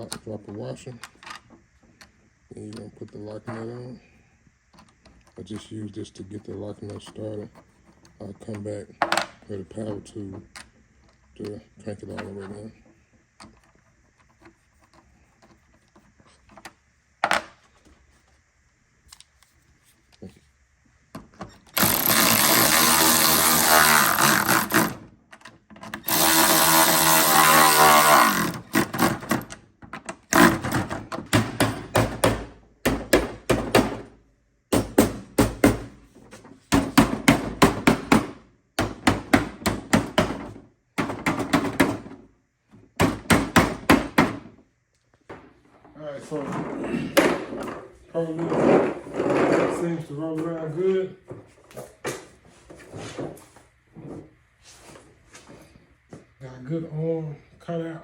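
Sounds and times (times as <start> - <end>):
power tool running nuts down: 21.7 - 25.1, 26.0 - 29.5, 30.3 - 30.8.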